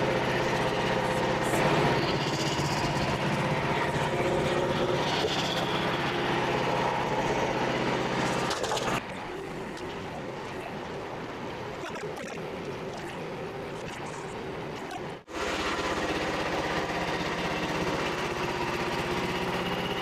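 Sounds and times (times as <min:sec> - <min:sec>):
sawmill engine running: 0:00.0 - 0:11.7, 0:14.4 - 0:20.0.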